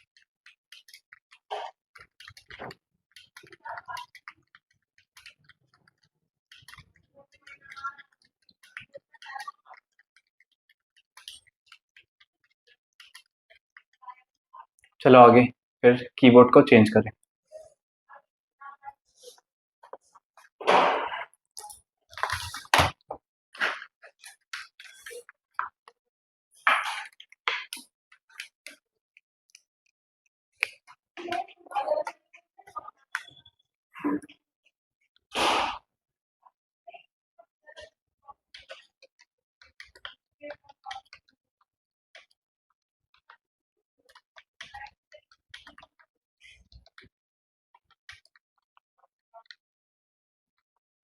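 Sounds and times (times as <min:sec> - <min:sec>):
keyboards clicking and clacking: 0:00.0 - 0:15.2.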